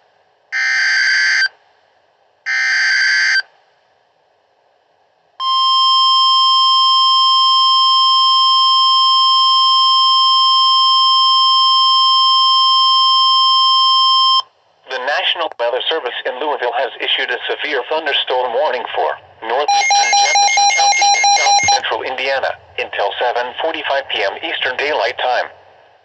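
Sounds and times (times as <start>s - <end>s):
digital data bursts: 19.7s - 21.8s
steady alert tone: 19.7s - 21.8s.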